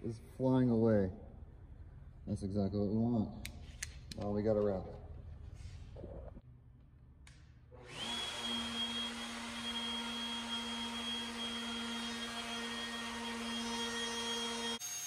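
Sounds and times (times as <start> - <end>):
wood router motor whine: 7.8 - 15.0.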